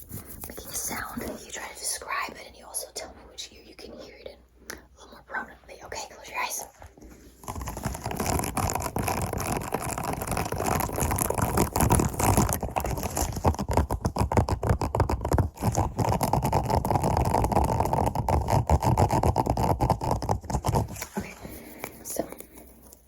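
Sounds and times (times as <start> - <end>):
scratching on silicone plate: 0.0 - 1.7, 7.1 - 23.0.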